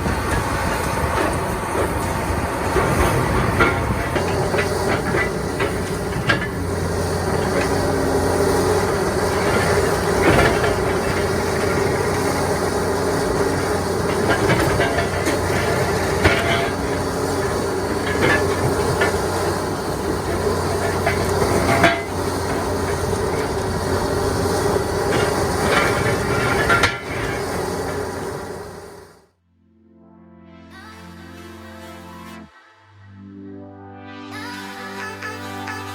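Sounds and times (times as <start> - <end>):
metal screeching: 0.0 - 28.4
demolition debris crunching: 0.0 - 29.0
backhoe diesel engine and hydraulics: 0.0 - 29.3.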